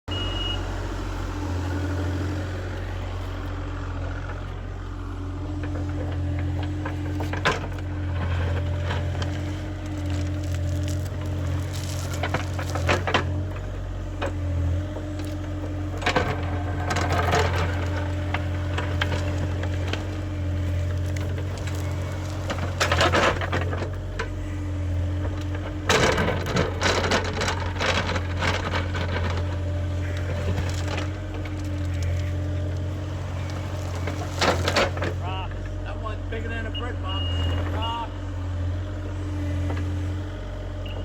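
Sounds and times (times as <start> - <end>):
excavator engine running: 0.0 - 41.0
material cracking and crunching: 9.0 - 13.5.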